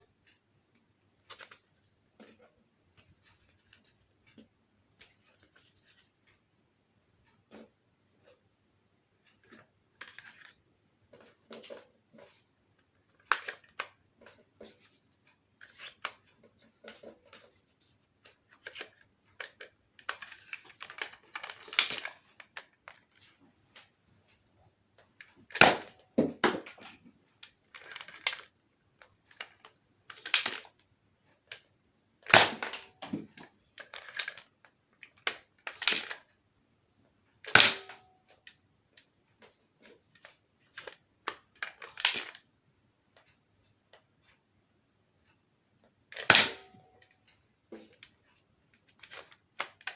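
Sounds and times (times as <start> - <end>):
toy blaster loading clicks: 27.8 - 28.5.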